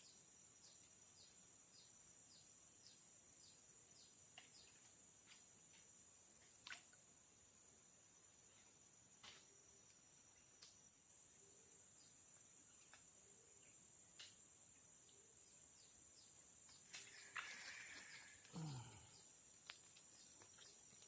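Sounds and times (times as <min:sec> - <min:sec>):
high-pitched insect drone: 0:16.9 - 0:19.4.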